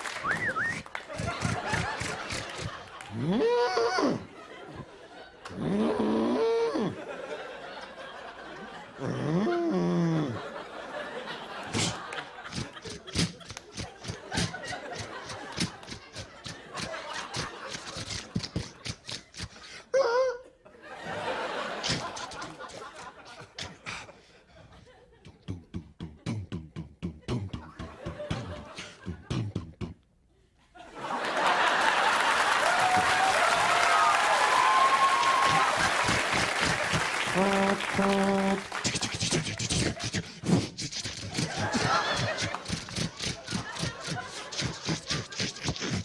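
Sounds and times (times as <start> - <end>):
studio audience applauding: 0.0 - 3.1, 31.1 - 39.7
audience laughing: 0.0 - 3.3, 4.2 - 5.7, 6.9 - 19.6, 20.5 - 25.4, 27.2 - 29.5, 30.8 - 46.0
mouth clicks: 0.2 - 3.4, 11.6 - 19.8, 21.8 - 22.8, 25.2 - 30.1, 35.0 - 46.0
wavering vocal cry: 1.1 - 4.3, 5.6 - 7.1, 19.9 - 20.5, 32.7 - 46.0.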